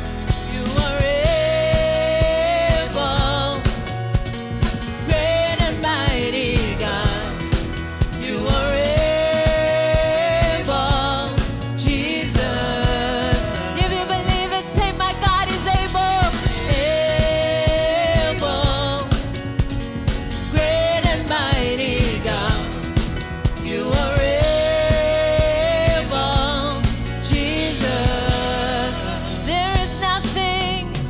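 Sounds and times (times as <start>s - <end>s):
gospel band playing: 0.0s - 31.0s
singers with vibrato: 0.0s - 31.0s.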